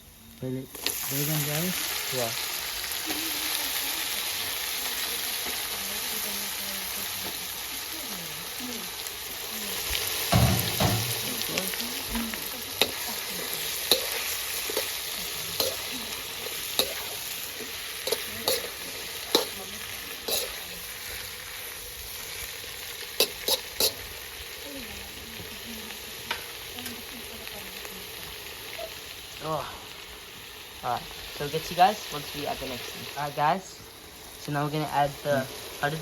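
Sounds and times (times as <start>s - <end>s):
food sizzling in a pan: 0.0s - 36.0s
utensil knocking against pan: 10.3s - 11.3s.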